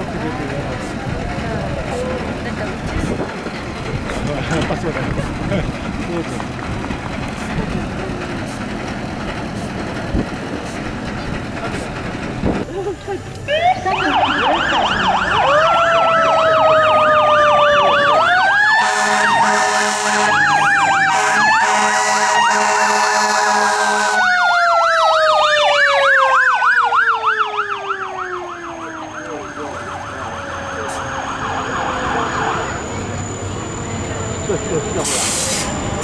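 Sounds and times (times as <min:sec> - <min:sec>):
loud steady blare: 0:13.5 - 0:24.4, 0:27.7 - 0:36.0
siren fast yelp: 0:13.5 - 0:34.2
siren slow wail: 0:13.5 - 0:36.0.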